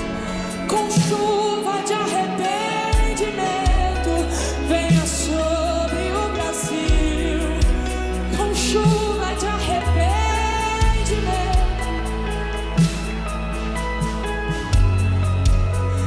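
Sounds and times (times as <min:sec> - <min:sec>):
gospel singing over a band: 0:00.0 - 0:16.0
steady bass: 0:03.0 - 0:16.0
regular drum beat: 0:06.6 - 0:09.6, 0:10.5 - 0:16.0.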